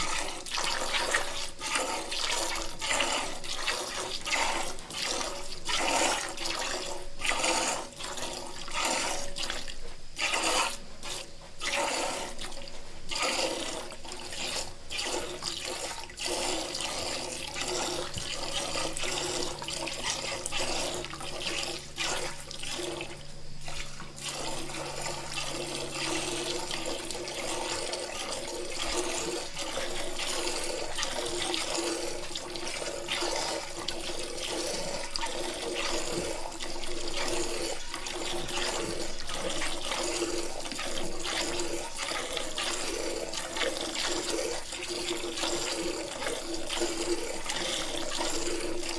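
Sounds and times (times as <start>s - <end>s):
milk splashing into container: 0.0s - 48.9s.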